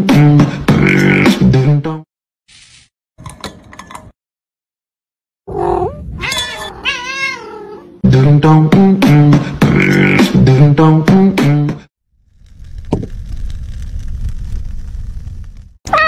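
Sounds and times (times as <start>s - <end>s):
cat meowing: 5.5s - 8.0s
loud vocal music: 8.0s - 11.9s.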